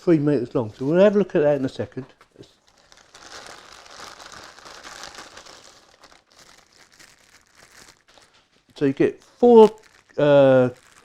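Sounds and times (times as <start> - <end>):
packaging crinkling and rustling: 2.2 - 11.0.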